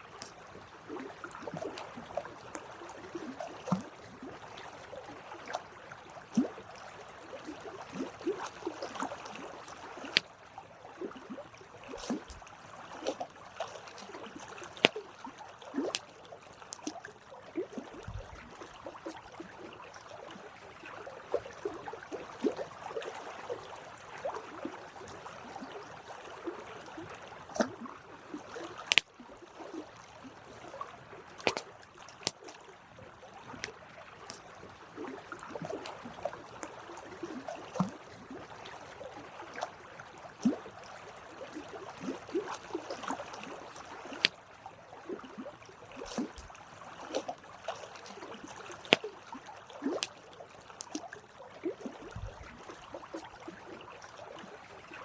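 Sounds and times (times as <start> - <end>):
campfire crackling and popping: 28.8 - 29.0.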